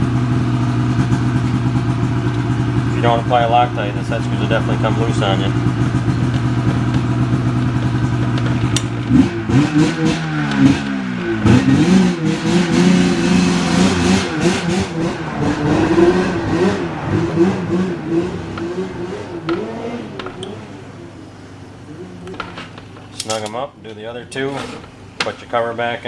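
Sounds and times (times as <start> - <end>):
engine revving: 1.0 - 23.2
metallic clatter: 22.3 - 23.6.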